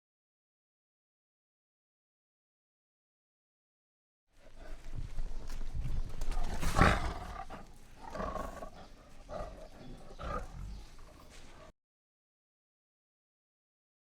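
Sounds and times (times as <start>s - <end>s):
big cat roaring: 6.3s - 11.7s.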